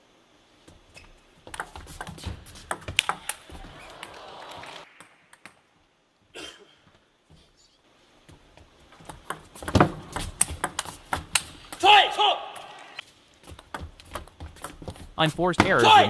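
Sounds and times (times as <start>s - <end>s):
table tennis ball ticking: 9.0s - 11.5s.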